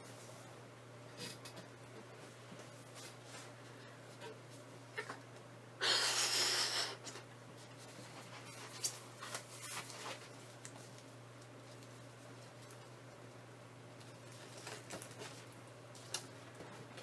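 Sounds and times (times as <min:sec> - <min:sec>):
steady low hum: 0:00.0 - 0:17.0
breath blown into balloon: 0:05.8 - 0:07.2.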